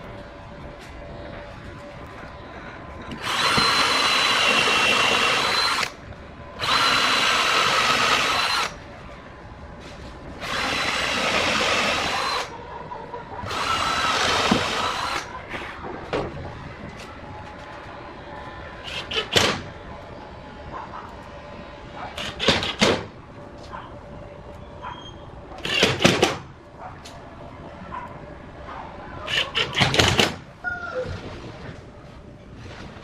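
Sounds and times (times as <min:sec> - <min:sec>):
power drill whining: 0:03.1 - 0:05.9, 0:06.6 - 0:08.7, 0:10.4 - 0:12.5, 0:13.5 - 0:15.3.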